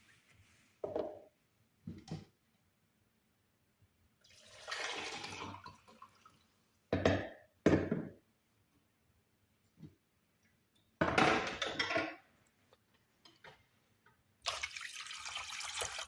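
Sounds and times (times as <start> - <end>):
water poured into a saucepan: 4.2 - 6.6, 14.4 - 16.0.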